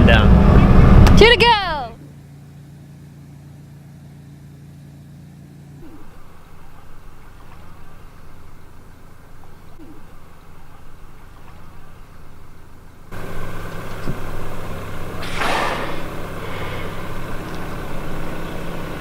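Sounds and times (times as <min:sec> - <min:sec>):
boat engine running: 0:00.0 - 0:19.0
rushing burst: 0:15.0 - 0:17.2.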